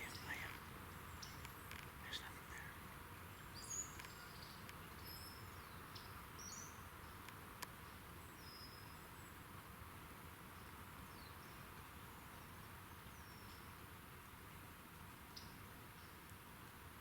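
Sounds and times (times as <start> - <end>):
outdoor hiss: 0.0 - 4.9
distant songbirds chirping: 0.0 - 9.5.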